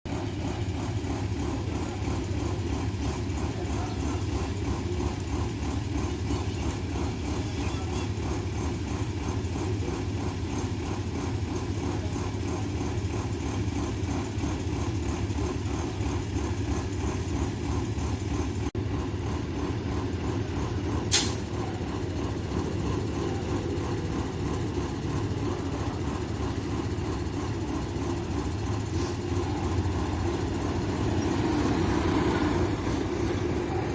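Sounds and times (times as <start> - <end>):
bus diesel engine idling: 0.0 - 33.9.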